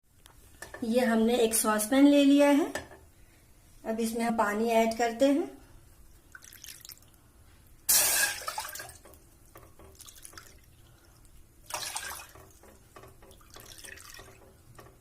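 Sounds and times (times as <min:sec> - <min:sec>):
water drips: 0:06.2 - 0:07.2, 0:08.3 - 0:14.9
water pouring into saucepan: 0:06.3 - 0:07.2, 0:07.9 - 0:09.2, 0:09.8 - 0:14.5.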